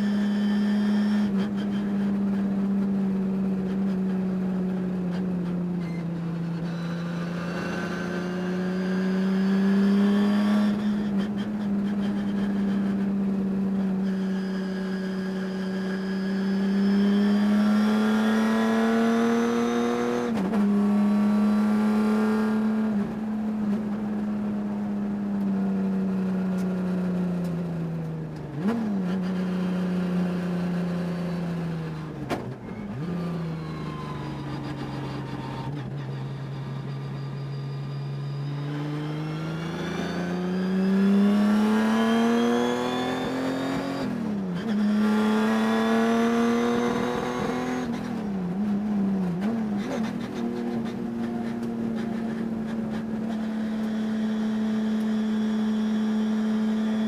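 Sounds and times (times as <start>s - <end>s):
race car engine revving: 38.5s - 57.0s.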